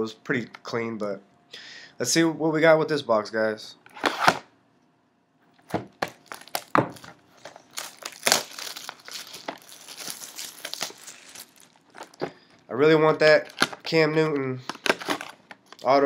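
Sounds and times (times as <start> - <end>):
packaging wrap crinkling and tearing: 6.0 - 16.0.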